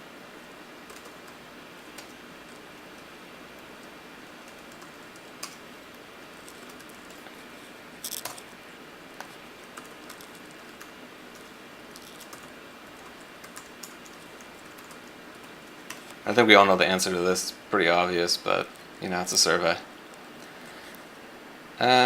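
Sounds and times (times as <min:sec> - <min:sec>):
steady background hiss: 0:00.0 - 0:22.0
keyboard typing: 0:00.8 - 0:07.4, 0:08.0 - 0:08.5, 0:09.2 - 0:16.2.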